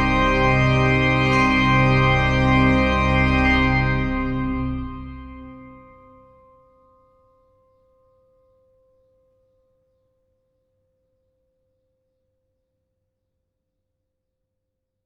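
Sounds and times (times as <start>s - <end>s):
ringing final music note: 0.0s - 6.2s.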